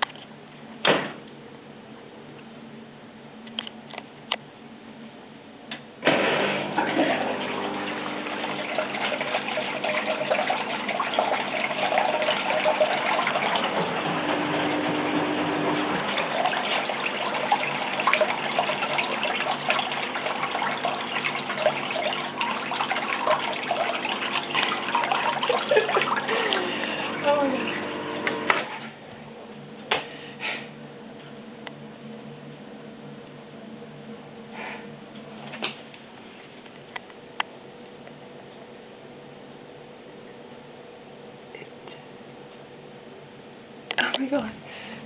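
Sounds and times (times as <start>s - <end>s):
water gushing from sink drain: 6.1s - 29.0s.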